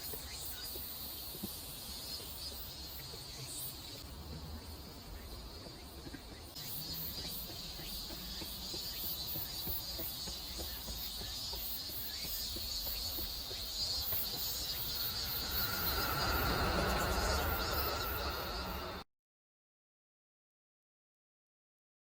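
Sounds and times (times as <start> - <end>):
insects chorus: 0.0 - 19.0
low rumble: 14.0 - 19.0
fast pulsing trill: 14.2 - 19.0
low steady tone: 14.6 - 19.0.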